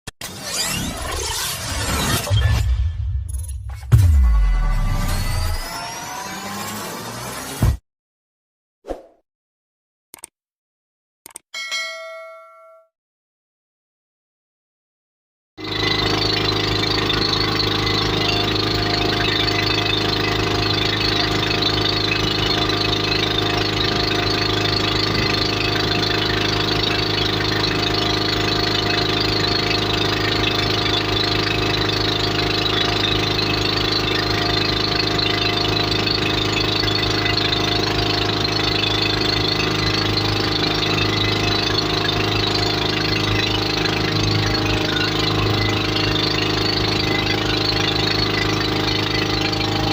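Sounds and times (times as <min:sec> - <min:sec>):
motorboat engine running: 0:15.6 - 0:49.9.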